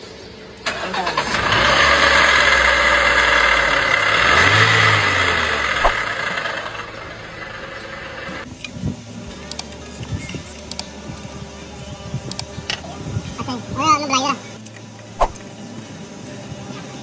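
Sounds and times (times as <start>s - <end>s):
car engine running and revving: 0.7s - 8.5s.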